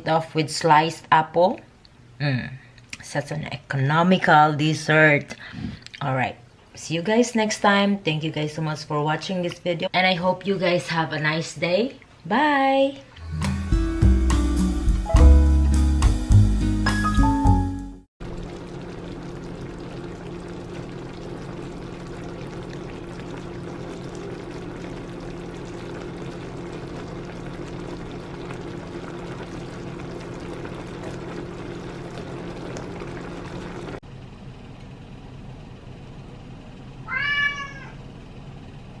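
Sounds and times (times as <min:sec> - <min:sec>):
low hum: 0:18.2 - 0:37.1
cat meowing: 0:37.0 - 0:38.0.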